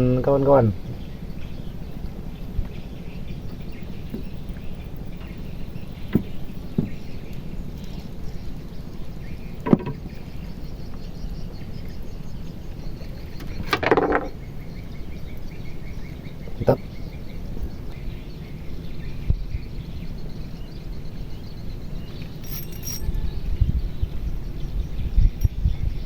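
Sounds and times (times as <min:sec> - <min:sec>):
short rattle: 0:13.4 - 0:14.4, 0:22.1 - 0:23.4
steady low rumble: 0:14.5 - 0:26.0.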